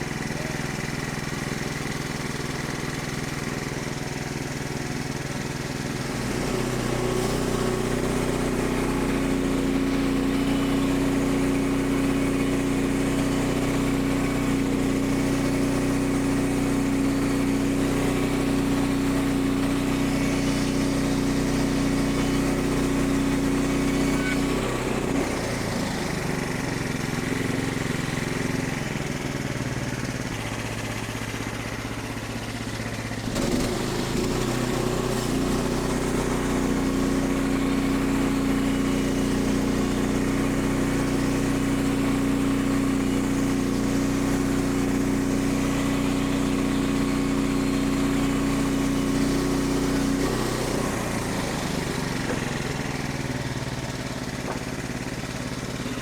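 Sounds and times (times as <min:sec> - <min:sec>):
small gasoline engine running: 0:00.0 - 0:56.0.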